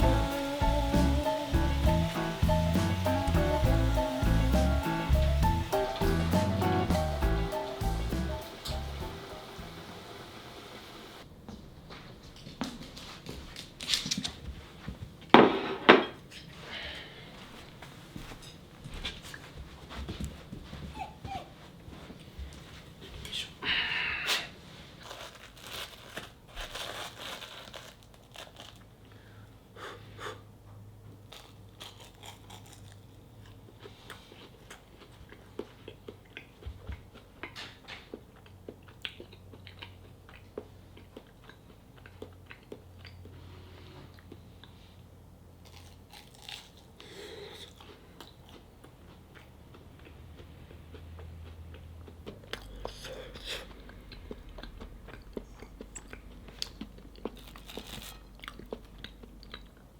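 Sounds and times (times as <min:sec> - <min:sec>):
dog chewing and crunching: 0:31.2 - 0:43.4, 0:45.6 - 0:59.9.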